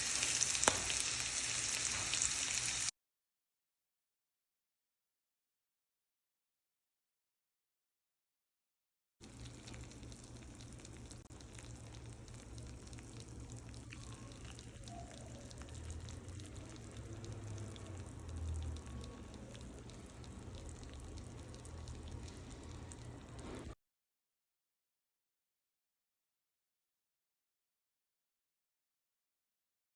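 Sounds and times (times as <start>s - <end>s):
food sizzling in a pan: 0.0s - 2.9s, 9.2s - 23.7s.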